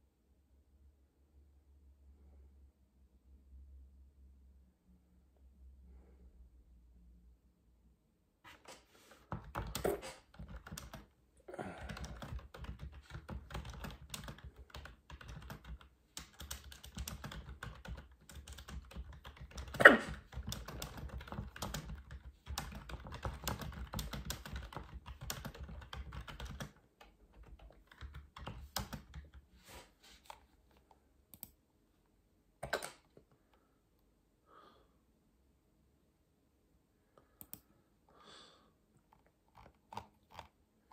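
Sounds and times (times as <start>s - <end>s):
typing on computer keyboard: 9.2s - 29.4s
person hiccuping: 19.8s - 20.2s.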